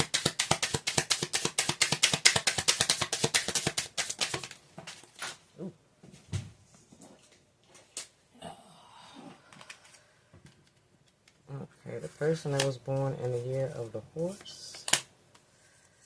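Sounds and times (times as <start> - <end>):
cards being shuffled: 0.0 - 5.4
soft card handling: 9.5 - 15.1.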